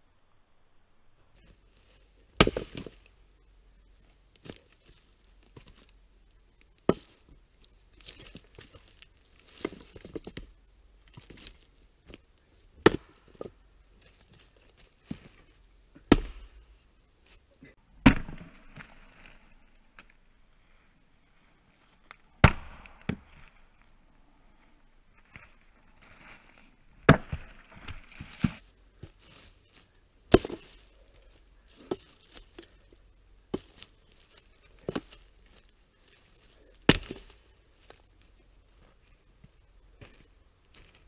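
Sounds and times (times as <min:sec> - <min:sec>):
axe splitting firewood: 0:01.4 - 0:03.2, 0:06.6 - 0:07.4, 0:08.0 - 0:10.5, 0:12.8 - 0:15.4, 0:16.0 - 0:16.7, 0:27.0 - 0:38.0
split wood rustling and crackling: 0:01.4 - 0:17.8, 0:27.3 - 0:41.0.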